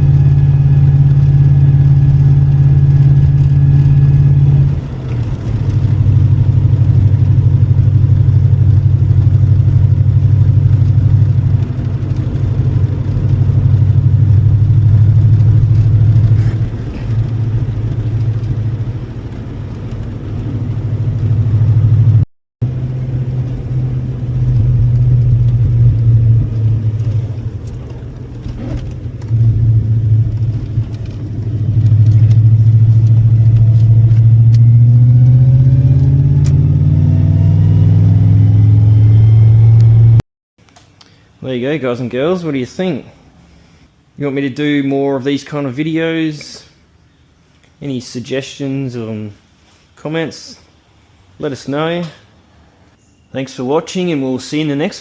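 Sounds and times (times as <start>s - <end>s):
car engine running: 0.0s - 40.2s.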